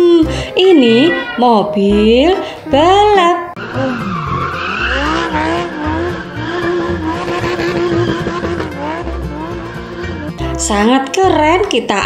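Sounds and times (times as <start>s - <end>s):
racing car engine revving: 3.6s - 10.5s
tyre squeal: 3.6s - 10.5s
music with pulsing bass: 3.6s - 11.6s.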